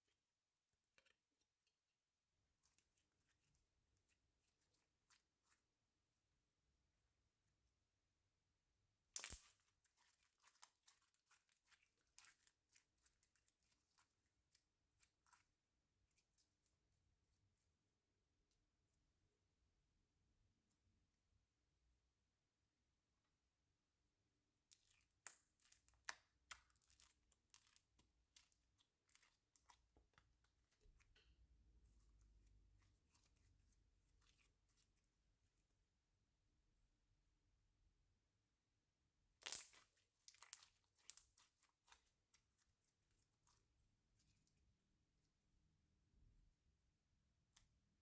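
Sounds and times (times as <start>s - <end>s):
slime stretching and squishing: 9.0s - 16.7s, 24.6s - 35.6s, 39.3s - 44.6s
slime crackles and pops: 9.1s - 11.0s, 39.4s - 42.0s.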